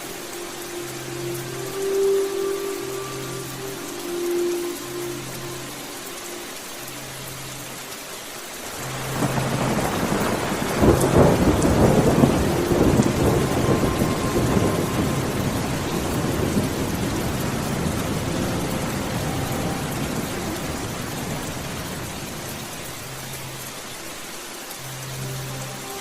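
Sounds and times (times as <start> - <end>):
steady rain: 0.0 - 26.0
thunder rolling: 9.2 - 21.8.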